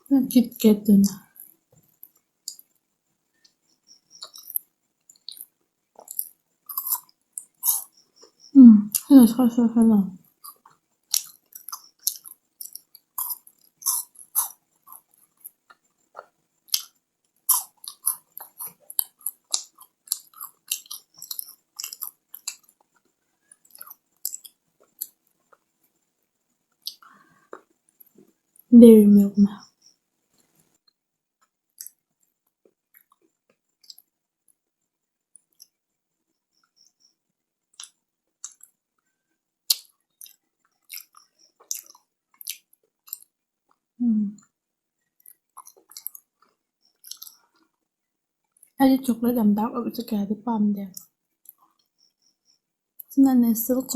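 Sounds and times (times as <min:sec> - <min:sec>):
chewing crunchy wafer bar: 0:03.4 - 0:09.1, 0:10.3 - 0:25.7, 0:26.8 - 0:28.4, 0:30.4 - 0:34.7, 0:35.3 - 0:35.8, 0:37.7 - 0:39.1, 0:39.7 - 0:43.8, 0:45.2 - 0:47.9.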